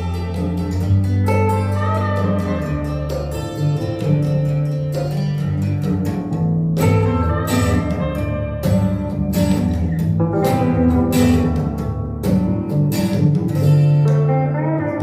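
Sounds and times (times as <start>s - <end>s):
instrumental music through speakers: 0.0s - 15.0s.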